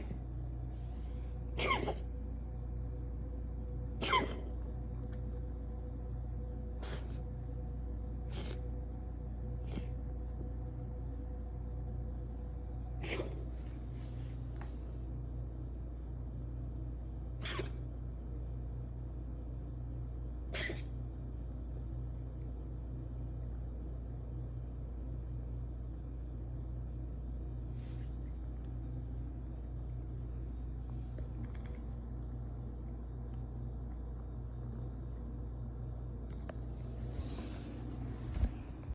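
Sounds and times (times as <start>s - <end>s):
steady low hum: 0.0s - 38.9s
cat coughing and hacking: 1.5s - 2.2s, 4.0s - 4.7s, 6.7s - 7.3s, 8.2s - 8.7s, 9.6s - 10.0s, 12.9s - 13.6s, 17.4s - 17.8s, 20.4s - 21.0s.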